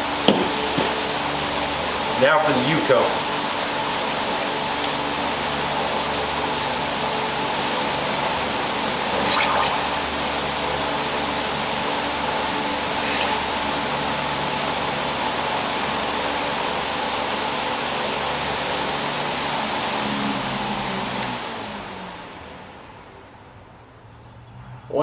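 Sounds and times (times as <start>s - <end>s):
fan-blown wind: 0.0s - 25.0s
running water: 4.8s - 16.6s
match struck and flaring: 9.0s - 12.0s, 12.9s - 13.9s.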